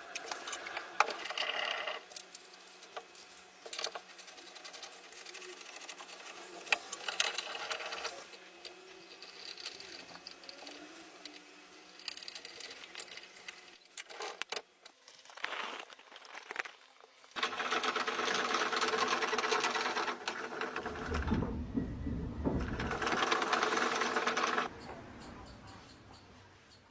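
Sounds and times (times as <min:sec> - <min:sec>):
small machine running: 0:17.4 - 0:26.0
clicks and knocks: 0:20.3 - 0:24.7
low rumble: 0:20.9 - 0:23.2.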